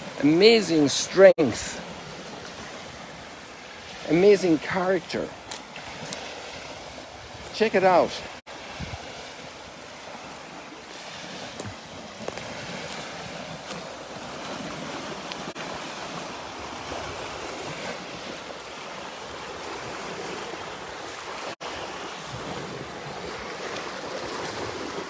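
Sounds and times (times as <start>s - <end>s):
lake waves washing ashore: 0.0s - 25.0s
wind on microphone: 5.2s - 25.0s.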